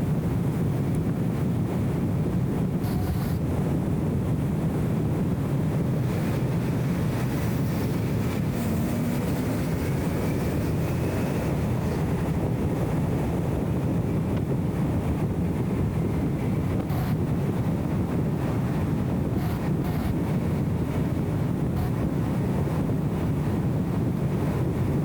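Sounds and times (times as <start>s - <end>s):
road and wind rumble: 0.0s - 25.0s
car engine accelerating: 6.1s - 13.4s.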